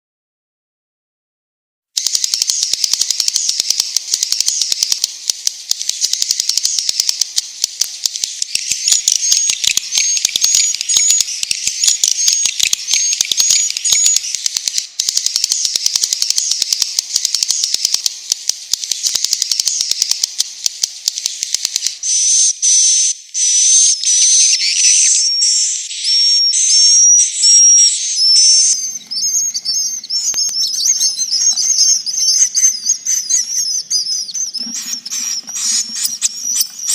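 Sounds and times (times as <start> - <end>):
rapid fine clicks: 2.0 - 22.0, 28.4 - 36.9
swiftlets twittering and chirping: 2.0 - 36.9.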